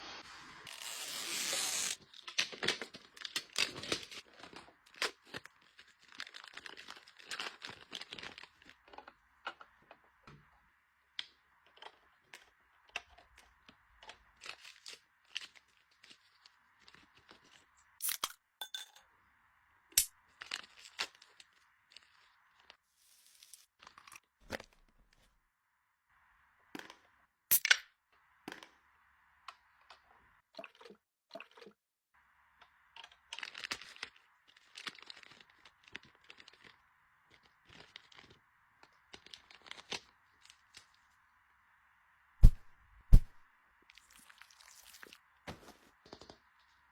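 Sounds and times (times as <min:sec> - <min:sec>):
packaging tearing and crinkling: 0:00.7 - 0:08.8.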